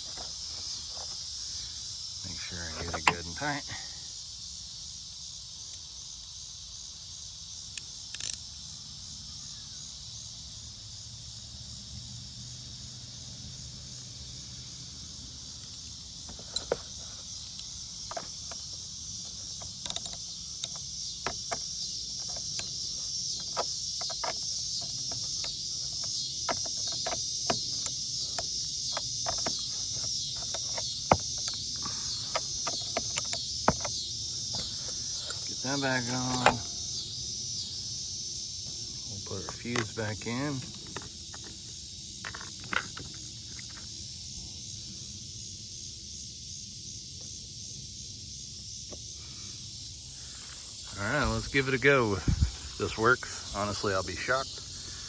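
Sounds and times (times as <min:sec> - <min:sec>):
crickets chirping: 0:00.0 - 0:55.0
wrench clicking on metal: 0:08.1 - 0:08.4, 0:19.7 - 0:21.6, 0:32.3 - 0:33.9.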